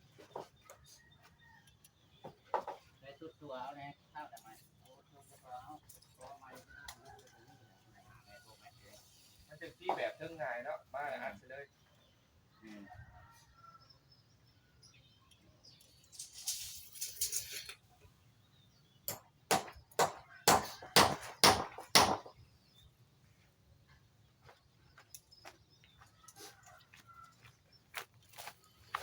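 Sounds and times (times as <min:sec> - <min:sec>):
rustling or scraping: 0:16.0 - 0:17.9
sharp knocks: 0:19.1 - 0:22.3.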